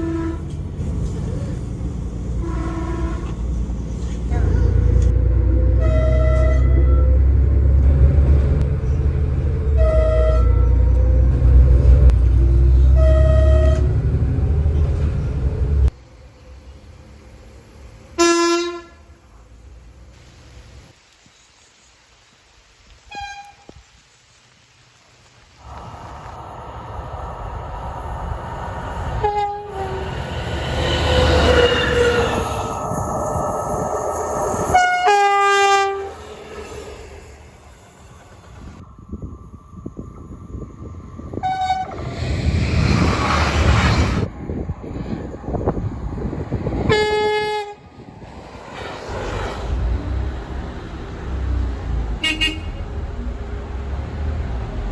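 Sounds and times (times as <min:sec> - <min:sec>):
low train rumble: 0:00.0 - 0:21.0, 0:25.6 - 0:54.9
train horn short toots: 0:02.4 - 0:03.4, 0:05.5 - 0:07.1, 0:09.8 - 0:10.9, 0:12.9 - 0:13.9, 0:18.2 - 0:19.0, 0:29.2 - 0:32.6, 0:34.6 - 0:36.2.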